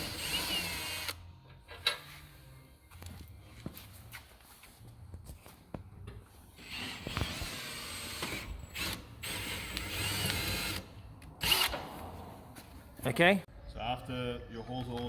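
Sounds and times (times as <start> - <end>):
power drill running: 0.0 - 1.2, 6.6 - 11.8.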